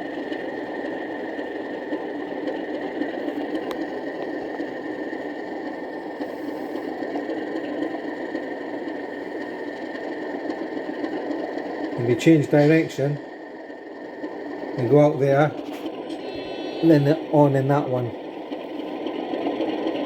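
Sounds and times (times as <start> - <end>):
thin high tone: 16.0 - 18.2.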